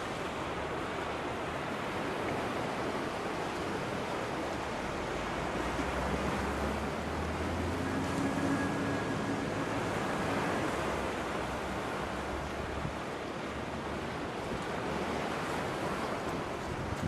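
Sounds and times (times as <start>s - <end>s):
steady rushing outdoor noise: 0.0s - 17.0s
low steady hum: 6.0s - 12.8s
faint high steady tone: 6.7s - 12.4s.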